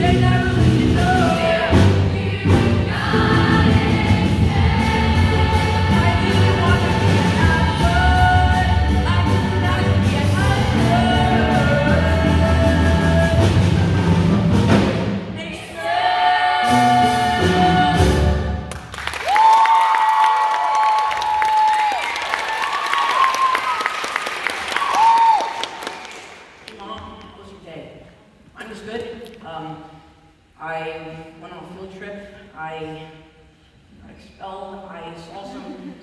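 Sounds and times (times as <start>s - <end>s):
rock band playing: 0.0s - 15.2s.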